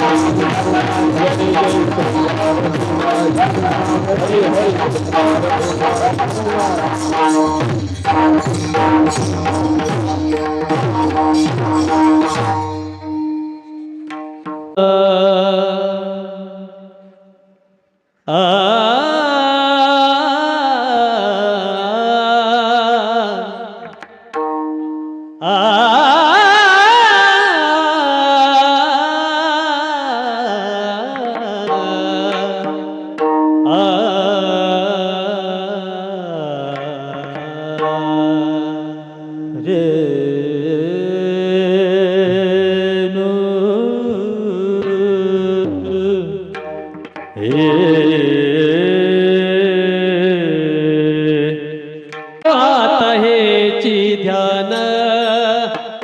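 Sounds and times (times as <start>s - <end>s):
person singing devotional song: 0.0s - 13.3s, 14.8s - 17.3s, 18.3s - 24.1s, 25.4s - 56.0s
held instrumental tones: 0.0s - 14.8s.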